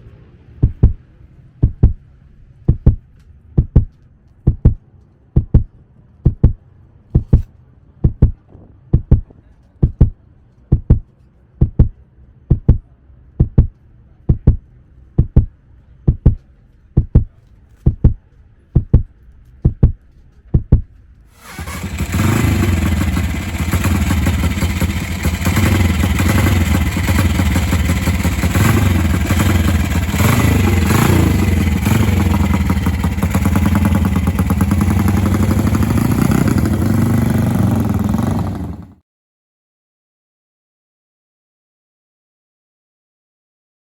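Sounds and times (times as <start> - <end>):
heartbeat thumping: 0.6 - 2.0, 2.6 - 4.8, 5.4 - 6.6, 7.2 - 16.4, 17.0 - 21.0
motorcycle engine running: 21.4 - 39.0.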